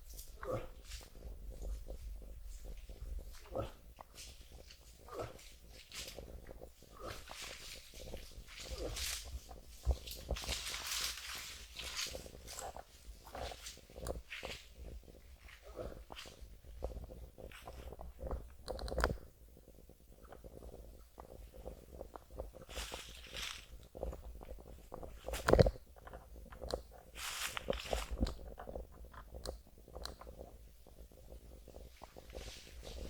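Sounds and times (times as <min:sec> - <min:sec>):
dry leaves crunching and rustling: 0:07.3 - 0:14.7, 0:22.6 - 0:23.9, 0:27.1 - 0:28.4.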